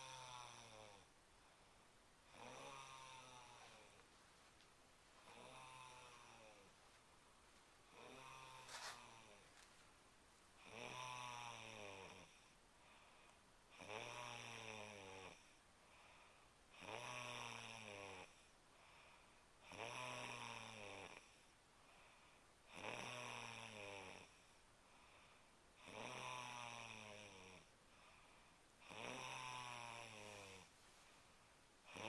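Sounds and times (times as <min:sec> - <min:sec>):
woman snoring: 0:00.0 - 0:01.1, 0:02.3 - 0:04.0, 0:05.2 - 0:06.7, 0:07.9 - 0:09.7, 0:10.6 - 0:13.0, 0:13.7 - 0:15.6, 0:16.7 - 0:21.5, 0:22.7 - 0:24.6, 0:25.8 - 0:27.7, 0:28.8 - 0:30.7
faint breaths: 0:00.7 - 0:11.0, 0:12.3 - 0:13.6, 0:15.4 - 0:16.7, 0:18.3 - 0:19.6, 0:21.4 - 0:22.7, 0:24.3 - 0:25.8, 0:27.7 - 0:28.8, 0:30.2 - 0:32.0.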